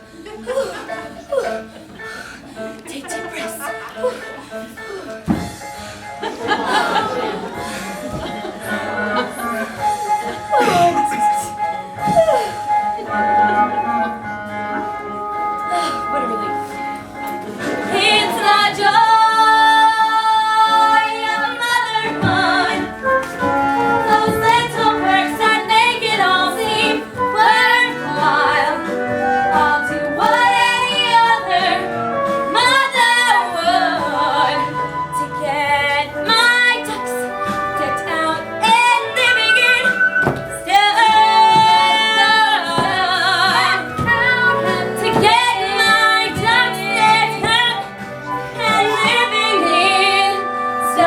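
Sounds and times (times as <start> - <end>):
instrumental accompaniment: 0.2 - 51.0
women singing show tune: 24.0 - 31.9, 32.5 - 51.0.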